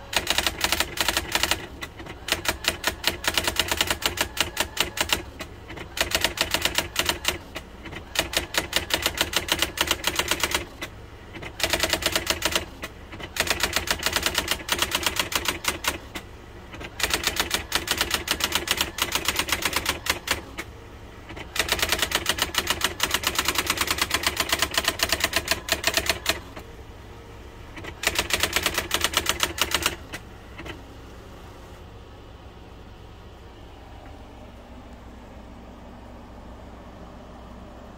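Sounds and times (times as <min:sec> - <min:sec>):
electric typewriter typing: 0:00.0 - 0:20.7, 0:21.3 - 0:26.6, 0:27.8 - 0:30.8
typewriter motor hum: 0:00.0 - 0:26.7, 0:27.7 - 0:30.9.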